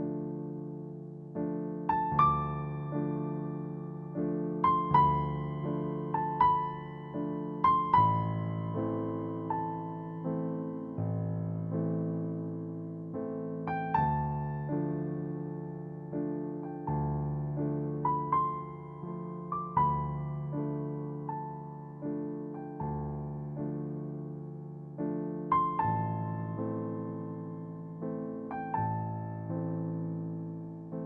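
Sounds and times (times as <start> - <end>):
slow piano music: 0.0 - 31.0.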